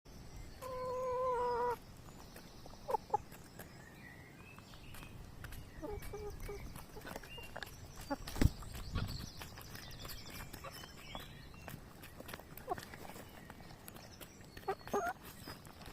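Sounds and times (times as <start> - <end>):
hens calling: 0.6 - 1.8, 14.5 - 15.4.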